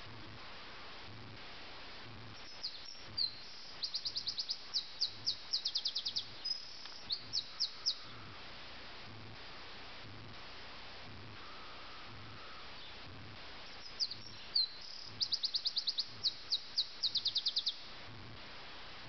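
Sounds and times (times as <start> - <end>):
steady hiss: 0.0 - 19.0
nightingale singing: 2.4 - 8.3, 13.7 - 17.9.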